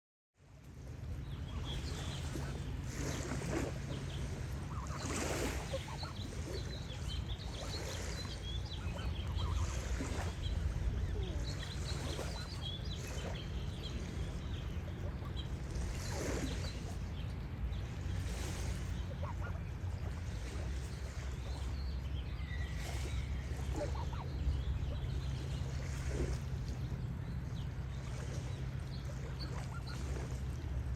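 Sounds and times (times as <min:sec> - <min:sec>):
songbirds chirping: 0:00.5 - 0:30.9
geese honking: 0:04.6 - 0:06.3, 0:19.0 - 0:19.7, 0:23.7 - 0:24.3
low rumble: 0:06.3 - 0:27.8.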